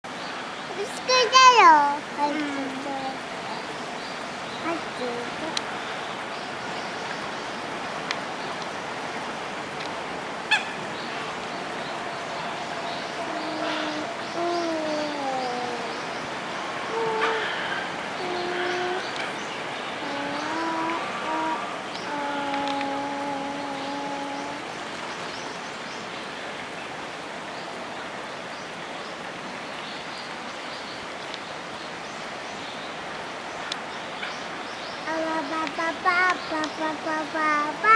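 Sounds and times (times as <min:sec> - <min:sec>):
rushing outdoor background noise: 0:00.0 - 0:37.9
background hiss: 0:00.1 - 0:37.9
honking bird call: 0:10.5 - 0:10.8
faint high bird chirps: 0:10.5 - 0:24.6, 0:34.2 - 0:37.9.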